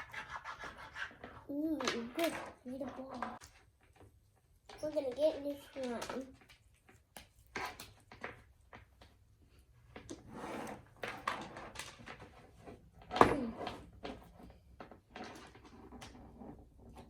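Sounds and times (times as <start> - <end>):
plastic toys clicking and rustling: 1.1 - 9.2, 11.0 - 16.3.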